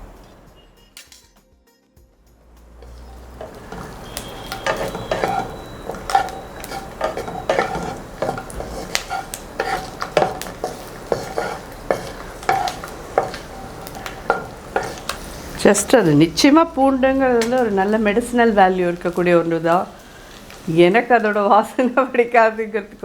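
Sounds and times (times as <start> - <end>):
garlic sizzling in oil: 2.6 - 23.0
spoon clinking and scraping pan: 2.8 - 16.2.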